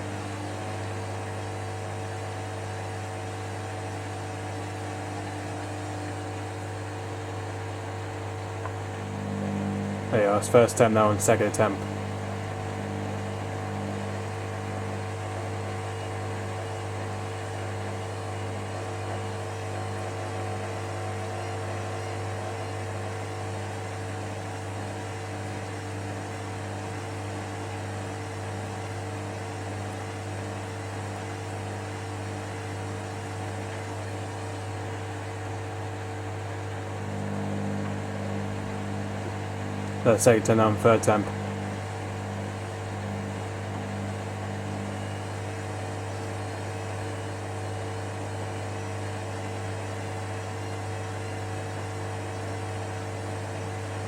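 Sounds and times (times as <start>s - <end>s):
washing machine drum pulsing: 36.8s - 47.7s.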